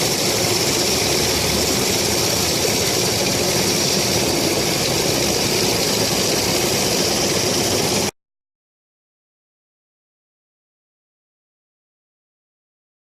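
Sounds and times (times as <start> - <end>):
high hiss of spray: 0.0 - 8.1
pressure washer engine hum: 0.0 - 8.1.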